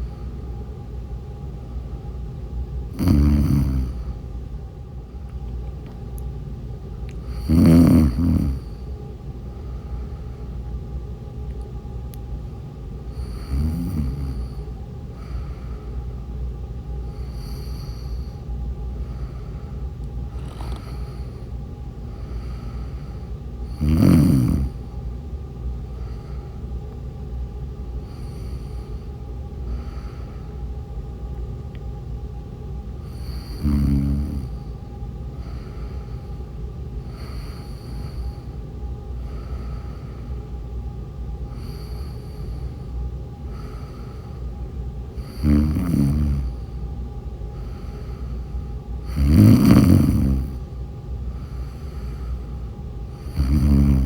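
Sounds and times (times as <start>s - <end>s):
steady low hum: 0.0s - 54.0s
woman snoring: 2.9s - 4.1s, 7.3s - 8.8s, 13.1s - 14.6s, 17.2s - 18.3s, 20.4s - 21.5s, 23.7s - 24.8s, 33.1s - 34.6s, 45.2s - 46.6s, 49.0s - 50.6s, 53.2s - 54.0s.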